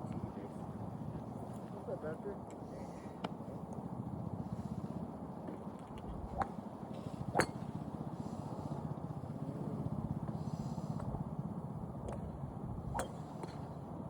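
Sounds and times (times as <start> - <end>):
steady low rumble: 0.0 - 14.0
golf clubs striking balls: 5.8 - 7.8, 12.0 - 13.8.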